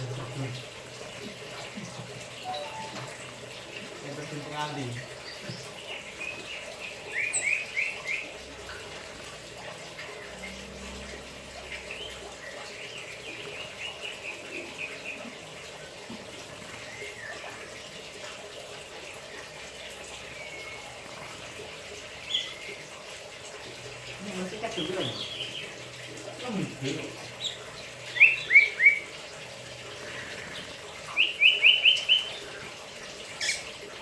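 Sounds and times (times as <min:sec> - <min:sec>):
running water hiss: 0:00.0 - 0:34.0
bird singing: 0:02.4 - 0:03.2, 0:05.2 - 0:08.3, 0:24.8 - 0:25.8, 0:27.4 - 0:29.1, 0:31.2 - 0:32.5.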